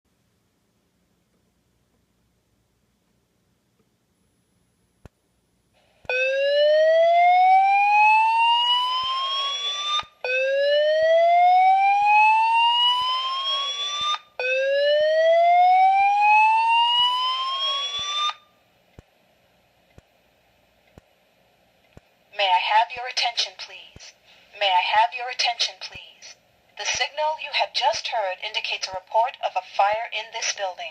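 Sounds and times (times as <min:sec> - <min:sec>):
fire alarm whoop tone: 0:06.1 - 0:18.4.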